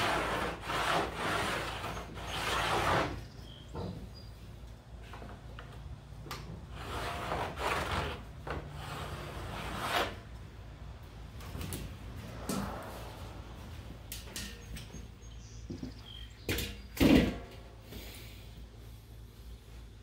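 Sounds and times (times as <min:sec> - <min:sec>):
rubbing sliding scrapes: 0:00.0 - 0:03.3, 0:06.7 - 0:10.3.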